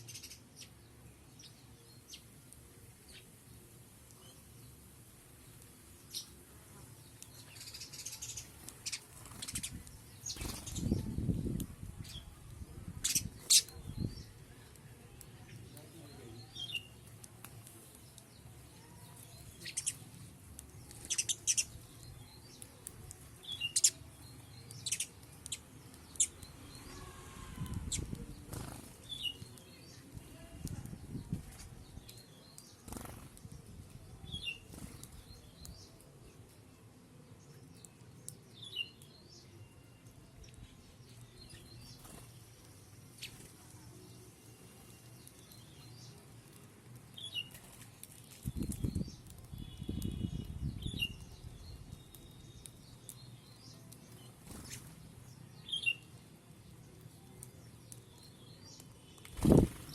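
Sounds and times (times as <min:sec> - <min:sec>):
sharp clicks of birds feeding: 0:01.4 - 0:36.7, 0:37.5 - 0:59.9
bird wing flaps: 0:32.8 - 0:33.4, 0:59.3 - 0:59.9.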